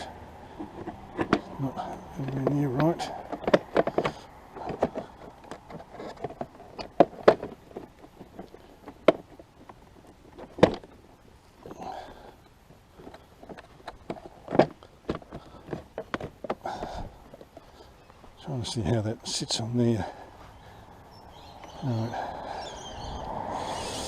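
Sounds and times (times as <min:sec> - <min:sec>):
plastic panel knocking and clicking: 0:03.2 - 0:09.3.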